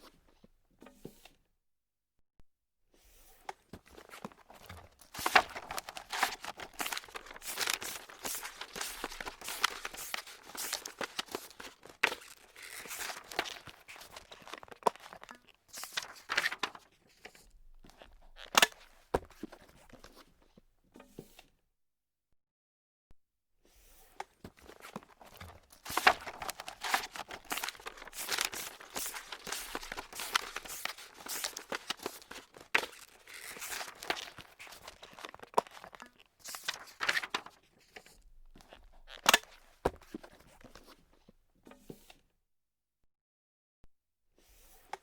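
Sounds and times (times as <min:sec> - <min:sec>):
paper crumpling: 0:04.0 - 0:16.9, 0:24.7 - 0:37.6.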